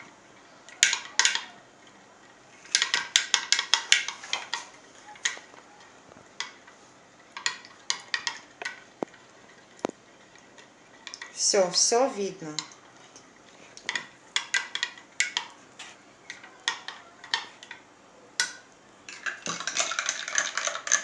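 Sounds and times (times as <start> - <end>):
spoon tapping glass tumblers: 2.7 - 5.5, 7.3 - 9.1, 13.8 - 15.6, 16.3 - 17.8, 18.4 - 21.0.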